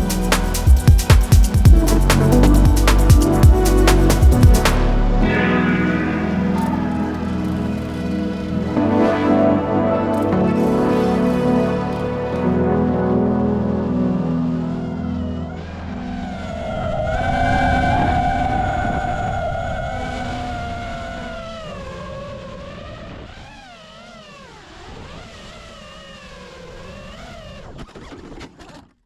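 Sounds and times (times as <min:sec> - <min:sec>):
quadcopter motors whining: 0:19.9 - 0:28.7.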